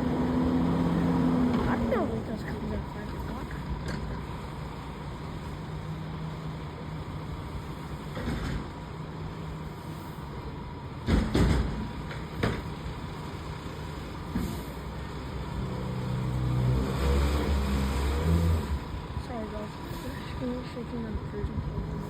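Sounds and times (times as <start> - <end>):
truck engine running: 0.0 - 22.0
loud metal clunks: 11.0 - 12.7.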